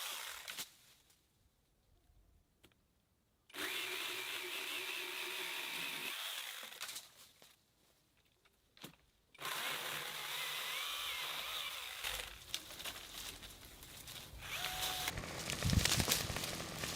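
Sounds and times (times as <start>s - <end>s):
cutting tool motor whine: 14.4s - 16.9s.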